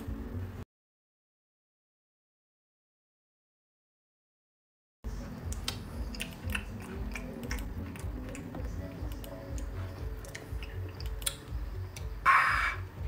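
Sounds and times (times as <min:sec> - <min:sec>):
mouth clicks and smacks: 0:05.4 - 0:12.8
person chewing: 0:05.5 - 0:12.1.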